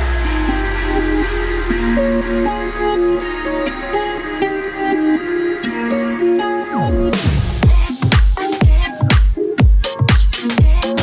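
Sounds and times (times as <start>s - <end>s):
short synth notes: 0.0s - 9.1s
house dance music: 0.0s - 11.0s
kick drum: 6.9s - 11.0s.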